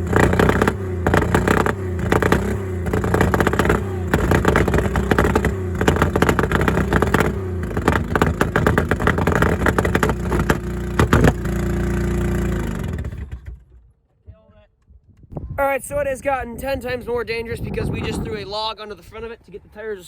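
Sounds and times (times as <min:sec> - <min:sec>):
car engine revving hard: 0:00.0 - 0:13.5
engine clattering: 0:00.0 - 0:13.9.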